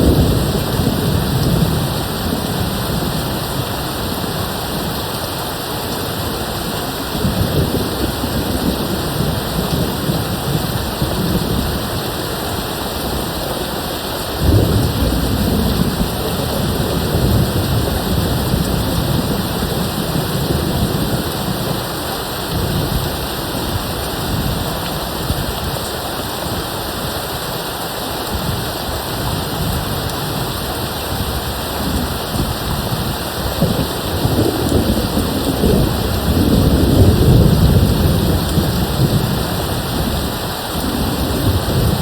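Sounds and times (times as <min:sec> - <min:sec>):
distant thunder rumbling: 0:00.0 - 0:05.0, 0:14.3 - 0:25.5, 0:29.2 - 0:42.0
heavy rain: 0:00.0 - 0:42.0
loud thunder peal: 0:14.4 - 0:21.8.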